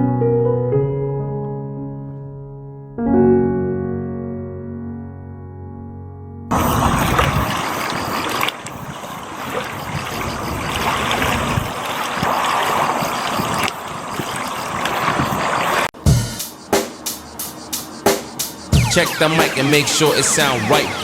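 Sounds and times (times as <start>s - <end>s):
steady rushing noise: 6.5s - 9.3s, 9.9s - 21.0s.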